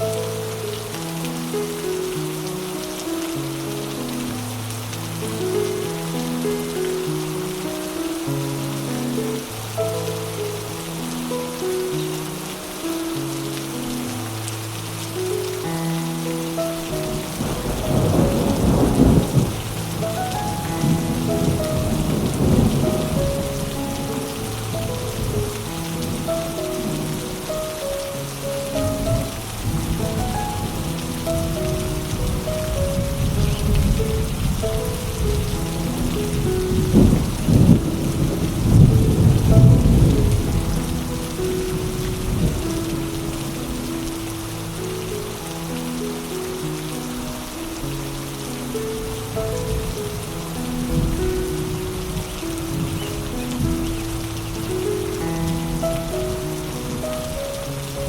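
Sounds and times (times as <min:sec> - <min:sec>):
soft slow music: 0:00.0 - 0:58.0
steady rain: 0:00.0 - 0:58.0
rolling thunder: 0:16.8 - 0:27.4, 0:28.7 - 0:43.8, 0:49.5 - 0:57.4.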